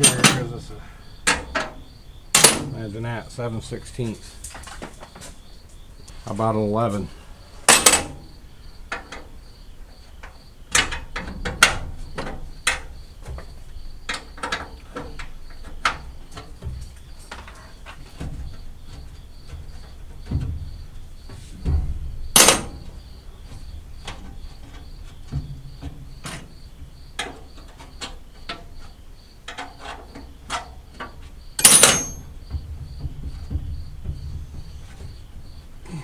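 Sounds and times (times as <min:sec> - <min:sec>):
loud metallic clanks: 0:00.0 - 0:03.7, 0:07.6 - 0:08.3, 0:22.2 - 0:23.0, 0:31.5 - 0:36.0
hand tools clicking on metal: 0:00.0 - 0:04.8, 0:29.5 - 0:32.4
cricket chirping: 0:00.0 - 0:36.0.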